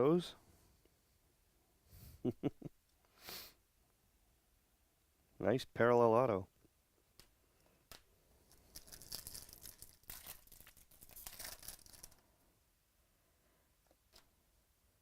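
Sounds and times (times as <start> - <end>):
wrappers crinkling and rustling: 8.5 - 12.2.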